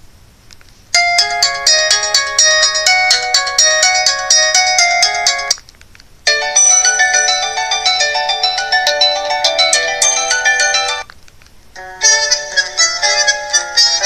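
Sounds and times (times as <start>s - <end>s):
chiming phone ringtone: 1.0s - 5.5s, 6.3s - 11.1s
bright electronic melody: 1.0s - 5.6s, 6.3s - 11.1s, 11.8s - 14.0s.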